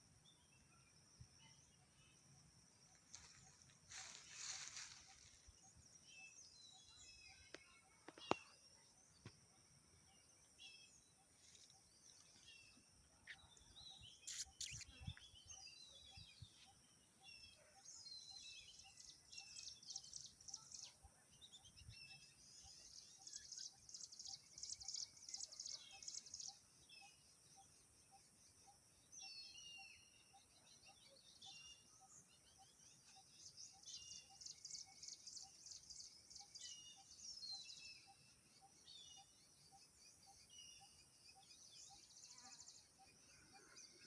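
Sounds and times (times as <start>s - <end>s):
birds chirping and trilling: 10.0s - 27.3s.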